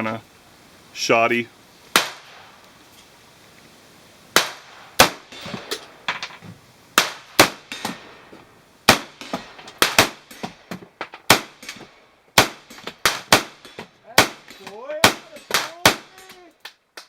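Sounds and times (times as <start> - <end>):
loud rifle shots: 1.9 - 2.6, 4.3 - 6.1, 7.0 - 8.2, 8.9 - 10.6, 11.3 - 11.8, 12.4 - 16.3
fainter gunshots: 8.9 - 10.4, 12.4 - 16.2.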